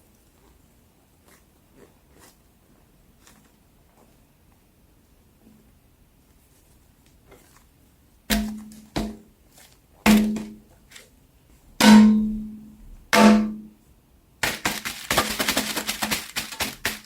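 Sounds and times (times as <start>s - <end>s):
struck ringing percussion notes: 11.8s - 12.6s, 13.2s - 13.7s
dense clicking beats: 14.4s - 17.0s.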